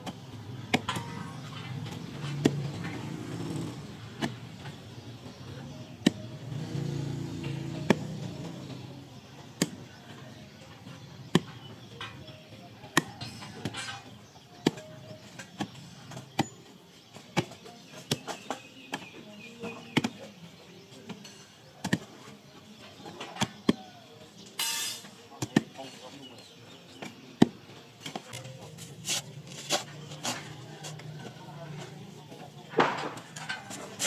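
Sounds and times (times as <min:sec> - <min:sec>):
digging tool strikes: 0:00.0 - 0:02.8, 0:04.2 - 0:04.5, 0:06.0 - 0:06.6, 0:07.8 - 0:08.2, 0:09.6 - 0:09.9, 0:12.9 - 0:16.6, 0:17.4 - 0:20.3, 0:21.1 - 0:22.1, 0:24.6 - 0:25.9, 0:32.7 - 0:34.0.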